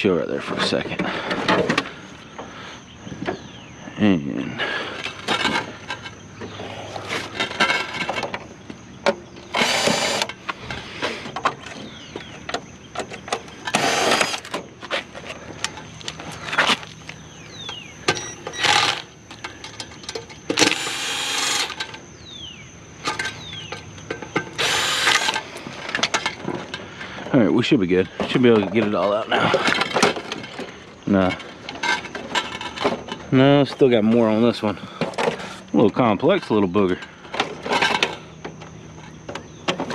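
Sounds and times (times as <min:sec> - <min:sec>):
drill running screws out: 0:09.5 - 0:10.4, 0:13.7 - 0:14.6, 0:18.4 - 0:19.1, 0:20.5 - 0:22.0, 0:24.5 - 0:25.5.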